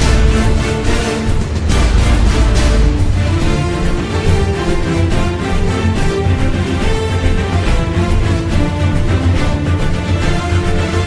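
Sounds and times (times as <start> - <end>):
background music: 0.0 - 11.0.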